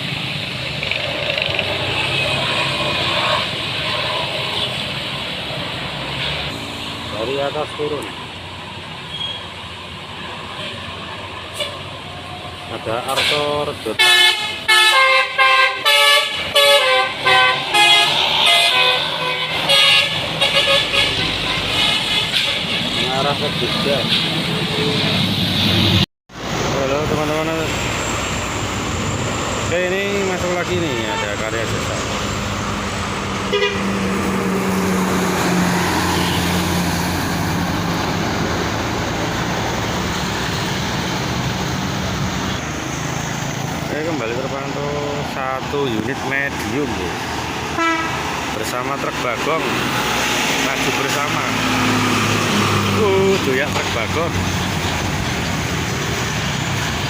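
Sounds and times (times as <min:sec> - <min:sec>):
bus engine and road noise: 0:00.0 - 0:57.0
musical bus air horn melody: 0:14.0 - 0:22.6, 0:33.5 - 0:34.0, 0:47.8 - 0:48.3.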